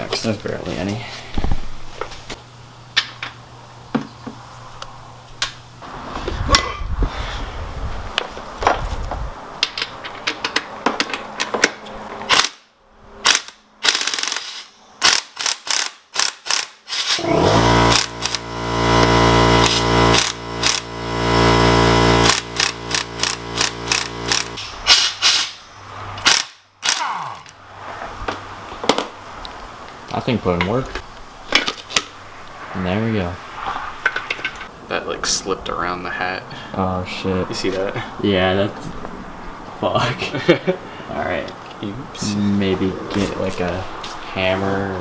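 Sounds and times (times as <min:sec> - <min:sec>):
air impact wrench hammering: 0:12.3 - 0:12.6, 0:13.2 - 0:25.6, 0:26.2 - 0:27.5.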